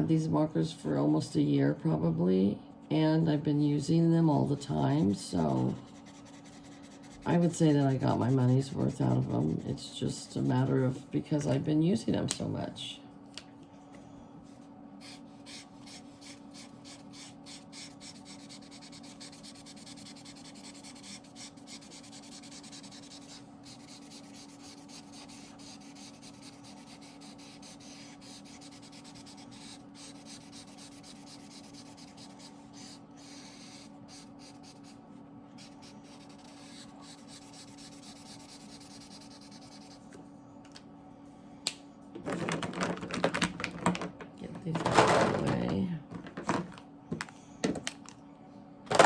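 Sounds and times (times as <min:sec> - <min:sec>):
steady low hum: 0:00.0 - 0:49.0
marker scratching on paper: 0:04.9 - 0:09.8, 0:15.0 - 0:35.0, 0:35.6 - 0:40.0.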